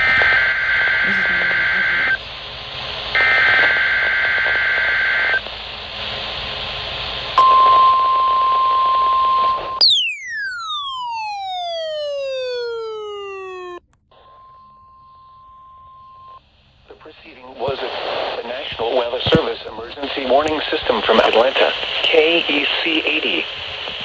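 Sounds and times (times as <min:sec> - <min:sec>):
steady warning alarm tone: 0:00.0 - 0:02.2, 0:09.8 - 0:16.4
two-tone data warble: 0:00.0 - 0:02.2, 0:09.8 - 0:16.4
radio static: 0:00.0 - 0:07.4, 0:16.9 - 0:24.0
electronic tone sweeping down: 0:09.8 - 0:13.8.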